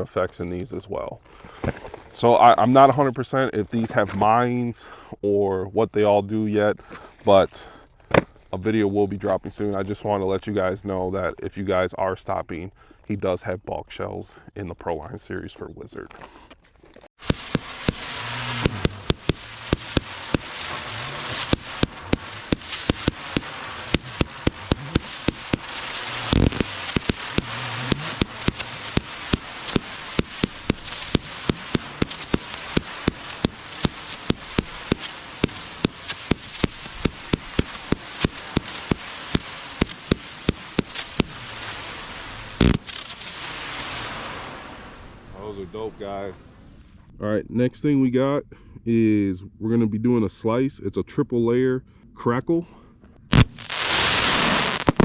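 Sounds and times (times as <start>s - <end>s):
crackling hiss: 17.1s - 47.1s, 53.3s - 55.0s
fireworks bangs: 17.2s - 46.5s, 53.3s - 55.0s.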